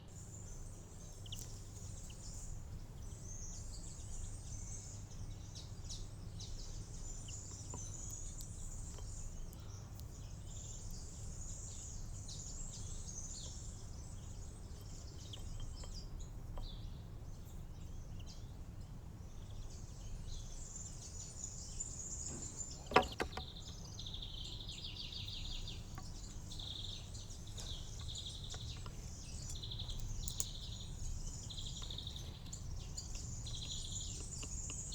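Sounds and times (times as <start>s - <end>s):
songbirds chirping: 0.0s - 34.9s.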